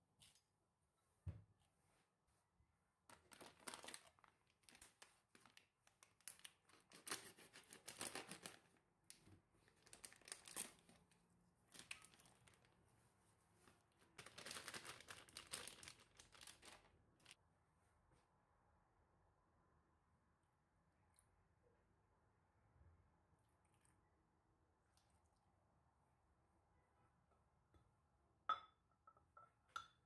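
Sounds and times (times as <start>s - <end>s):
food packaging crinkling and tearing: 3.1s - 8.8s, 9.6s - 12.8s, 14.1s - 17.4s.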